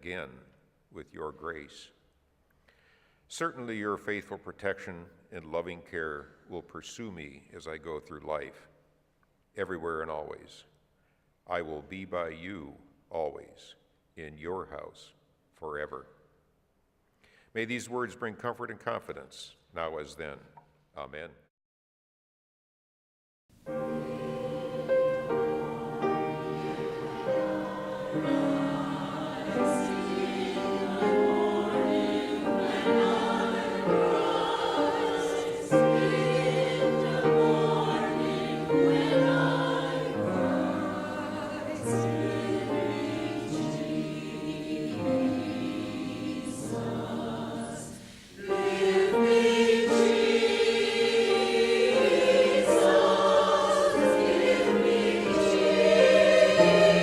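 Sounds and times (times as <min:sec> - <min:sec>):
choir singing sustained chords: 0:23.6 - 0:57.0.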